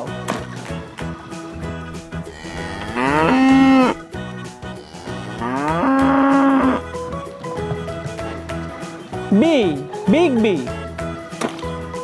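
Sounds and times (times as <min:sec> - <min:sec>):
cow mooing: 0:02.3 - 0:04.0, 0:04.8 - 0:06.9.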